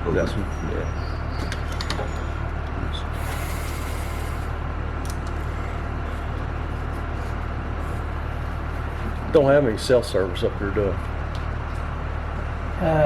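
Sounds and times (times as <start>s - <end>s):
low machine hum: 0.0s - 13.0s
short hiss: 3.2s - 4.5s.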